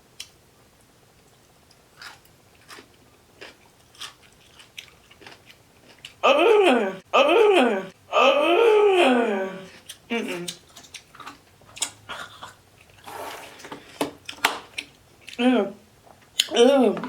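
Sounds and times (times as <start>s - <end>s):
crunchy chewing: 2.0s - 6.2s
person groaning in disgust: 6.2s - 10.5s.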